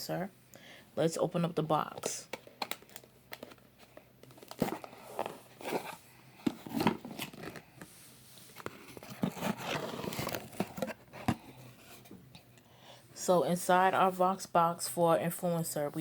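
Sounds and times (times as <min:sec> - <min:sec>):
cardboard tearing and rustling: 0:04.4 - 0:07.6, 0:08.8 - 0:11.0.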